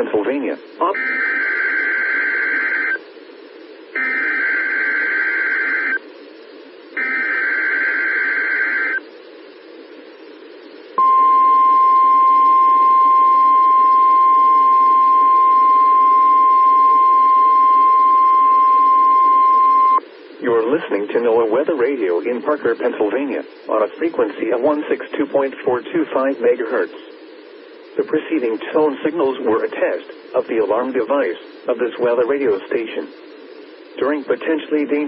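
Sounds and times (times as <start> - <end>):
radio hiss: 0.0 - 35.0
steady warning alarm tone: 0.9 - 3.0, 4.0 - 6.0, 7.0 - 9.0, 11.0 - 20.0
buzzy digital data bursts: 3.9 - 6.0, 7.0 - 9.0.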